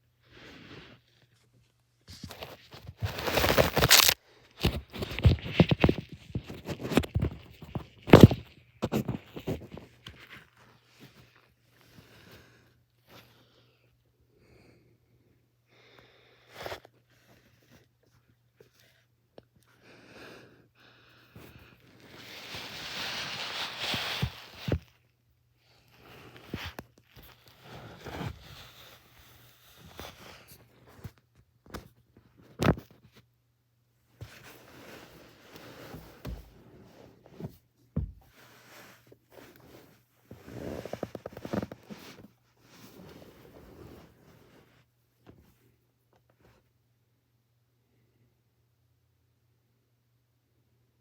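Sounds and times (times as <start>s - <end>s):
rustling and scraping: 0.2s - 13.4s, 21.4s - 25.1s, 25.8s - 33.3s, 34.1s - 46.6s.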